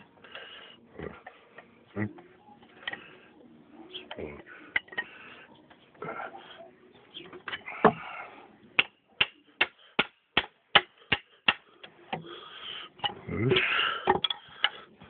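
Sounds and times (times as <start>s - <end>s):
sharp evenly spaced knocks: 8.8s - 12.3s.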